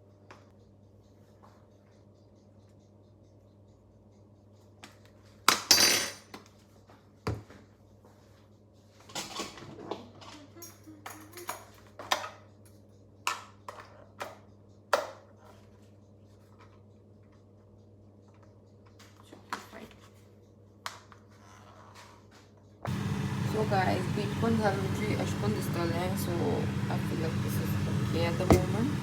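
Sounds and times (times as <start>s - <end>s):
steady low hum: 22.9s - 29.0s.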